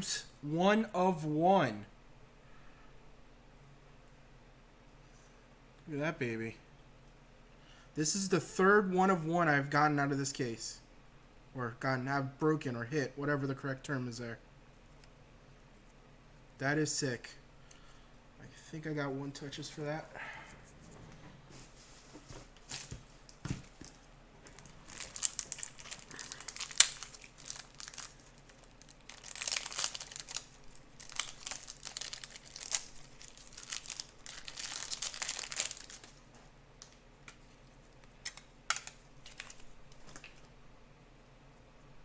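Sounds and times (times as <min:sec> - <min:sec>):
plastic packaging crinkling: 0:21.5 - 0:40.5.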